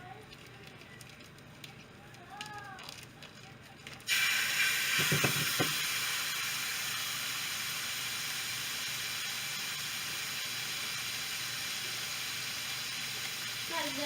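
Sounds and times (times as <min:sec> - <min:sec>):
meat sizzling in a frying pan: 0:04.1 - 0:14.0.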